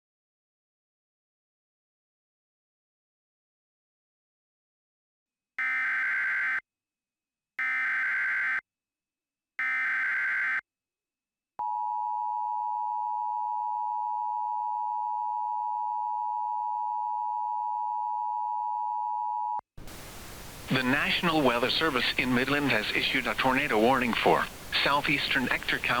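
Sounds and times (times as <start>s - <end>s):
buzzy data bursts: 19.8s - 26.0s.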